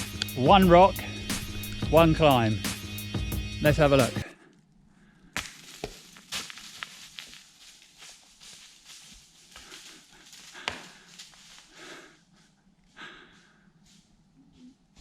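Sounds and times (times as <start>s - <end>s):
heavy breathing: 0.9s - 1.8s, 9.5s - 14.8s
footsteps and scrapes on rock: 5.4s - 11.8s.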